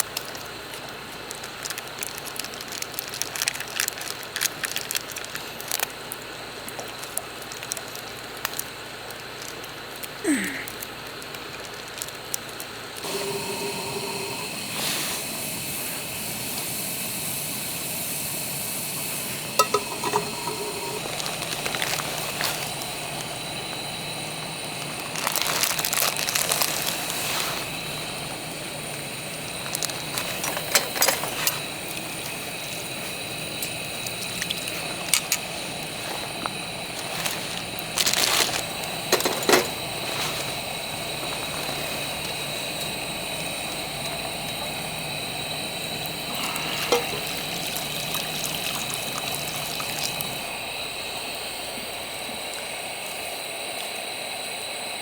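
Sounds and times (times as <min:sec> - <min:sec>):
steady hiss: 0:00.0 - 0:55.0
utensils clinking against pot: 0:19.6 - 0:23.3, 0:29.5 - 0:32.6, 0:33.5 - 0:42.4, 0:46.3 - 0:50.4
liquid splashing: 0:46.0 - 0:50.6.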